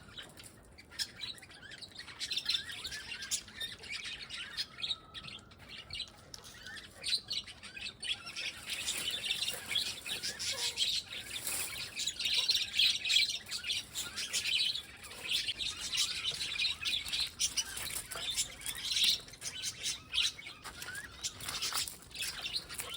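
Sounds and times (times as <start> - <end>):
birds chirping: 0.0 - 22.9.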